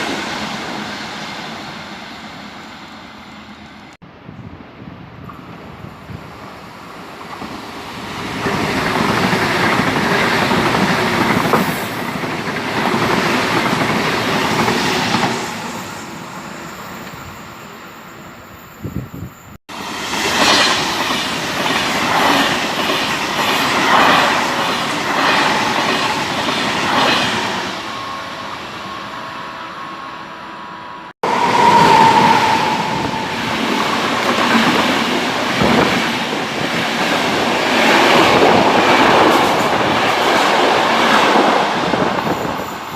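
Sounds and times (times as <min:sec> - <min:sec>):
train wheels squealing: 0:14.6 - 0:21.1, 0:26.8 - 0:33.8.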